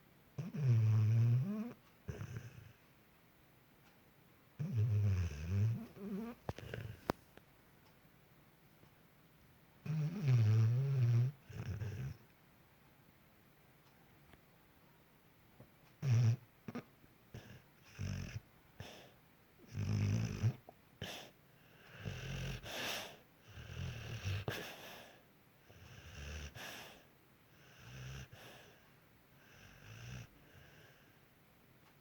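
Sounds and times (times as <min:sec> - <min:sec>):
dog snoring: 0:00.4 - 0:02.8, 0:04.6 - 0:07.1, 0:09.8 - 0:12.2, 0:16.0 - 0:28.8, 0:29.4 - 0:31.1
dog snorting: 0:00.4 - 0:02.8, 0:04.6 - 0:07.2, 0:09.8 - 0:12.2, 0:16.0 - 0:25.2.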